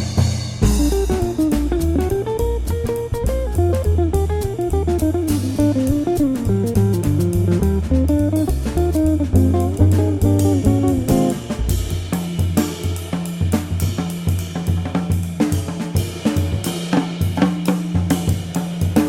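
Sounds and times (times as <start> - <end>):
steady drum beat: 0.0 - 19.0
bass line: 0.6 - 12.1
plucked guitar melody: 0.7 - 11.7.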